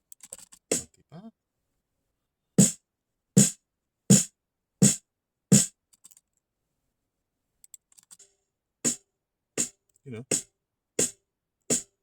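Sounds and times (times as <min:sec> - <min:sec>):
snare drum hits: 0:03.4 - 0:05.7.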